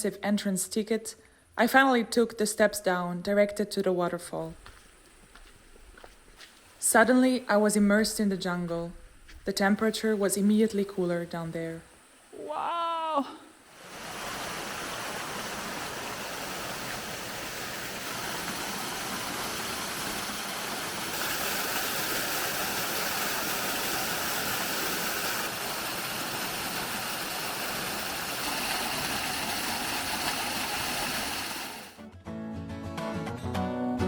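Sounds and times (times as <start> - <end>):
waterfall rushing: 12.3 - 32.0.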